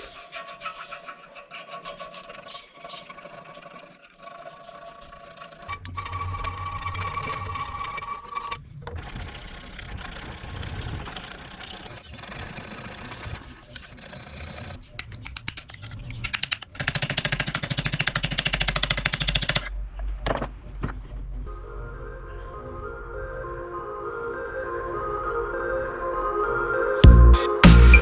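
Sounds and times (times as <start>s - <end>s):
power tool rattling: 16.5s - 19.7s.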